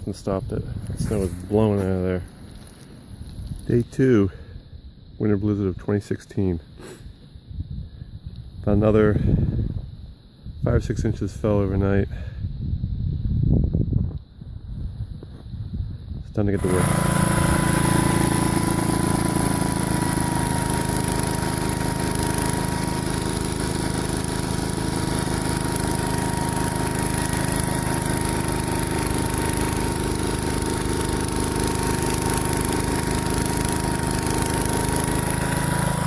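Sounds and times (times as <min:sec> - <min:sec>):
snow blower whine: 0:16.6 - 0:36.0
tractor engine running: 0:16.6 - 0:36.0.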